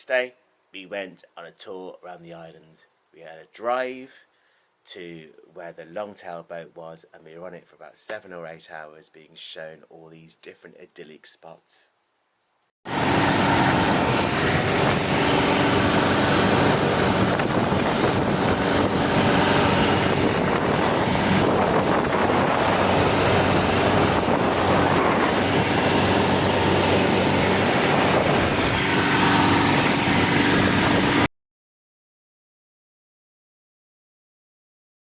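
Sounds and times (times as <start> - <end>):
boat engine running: 12.9 - 31.3
wind noise on microphone: 12.9 - 31.3.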